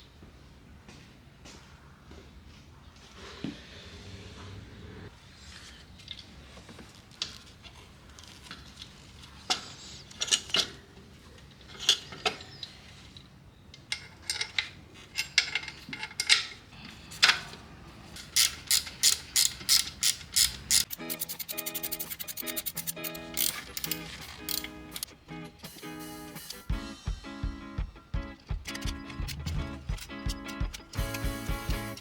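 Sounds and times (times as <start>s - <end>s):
ratchet wrench clicking: 18.2s - 25.8s, 28.6s - 32.0s.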